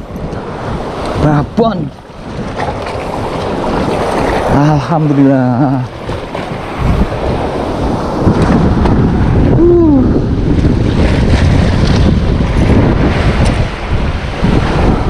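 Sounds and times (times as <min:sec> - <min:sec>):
sea waves on shore: 0:00.0 - 0:15.0
wind buffeting microphone: 0:00.0 - 0:15.0
short falling voice-like sound: 0:09.6 - 0:10.2.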